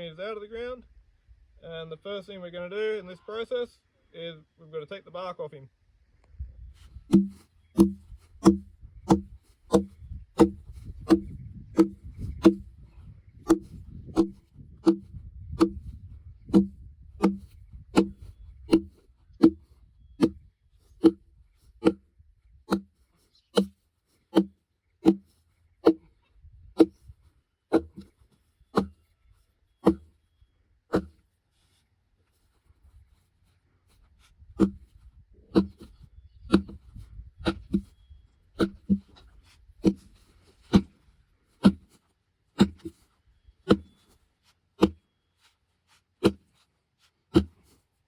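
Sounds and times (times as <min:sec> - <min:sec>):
sledgehammer thudding on log bark: 0:07.1 - 0:12.7, 0:13.4 - 0:20.4, 0:21.8 - 0:22.0, 0:22.7 - 0:22.9, 0:23.6 - 0:26.0, 0:26.8 - 0:27.1, 0:27.7 - 0:28.1, 0:28.8 - 0:29.0, 0:29.8 - 0:30.1, 0:30.9 - 0:31.2, 0:34.6 - 0:34.9, 0:35.6 - 0:35.9, 0:36.5 - 0:36.8, 0:37.4 - 0:37.9, 0:38.6 - 0:39.2, 0:39.8 - 0:40.1, 0:40.7 - 0:41.0, 0:41.6 - 0:42.0, 0:42.6 - 0:43.0, 0:43.7 - 0:44.0, 0:44.8 - 0:45.0, 0:46.2 - 0:46.5, 0:47.3 - 0:47.7.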